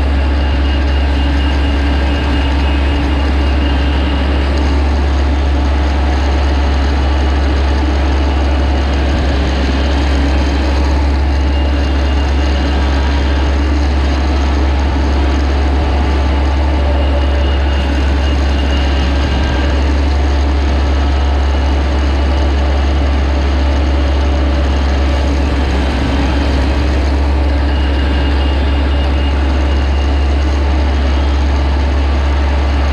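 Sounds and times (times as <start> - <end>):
harvester engine rumbling: 0.0 - 32.9.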